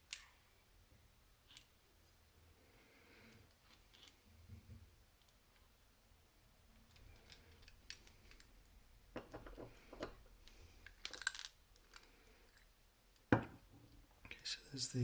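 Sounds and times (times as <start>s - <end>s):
small metal parts clinking: 10.8s - 12.7s.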